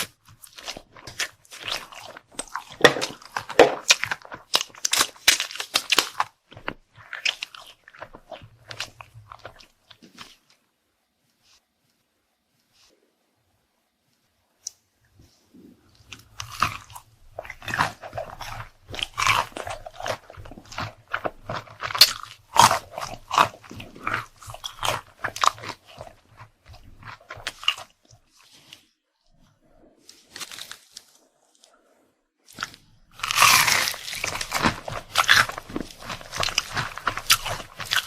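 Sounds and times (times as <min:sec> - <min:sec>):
person chewing crunchy food: 0:00.0 - 0:10.5, 0:15.8 - 0:28.9, 0:32.4 - 0:38.0.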